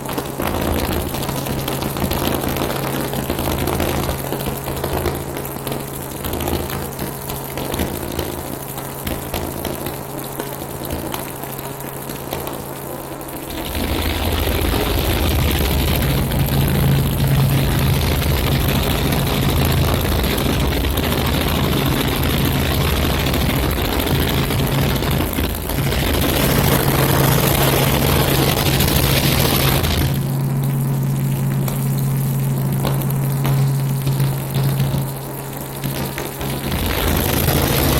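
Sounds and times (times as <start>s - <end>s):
rushing noise: 13.5s - 34.8s
helicopter engine and rotor hum: 13.5s - 34.9s.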